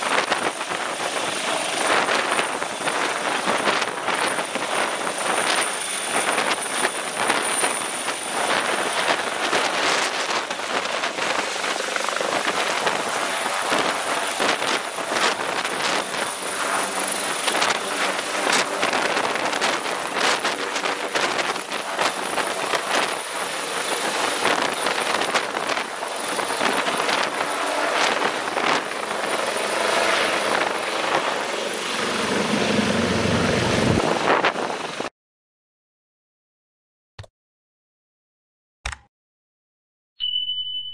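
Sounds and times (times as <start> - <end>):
helicopter rotor chop: 0.0 - 35.1
high helicopter whine: 0.0 - 35.1.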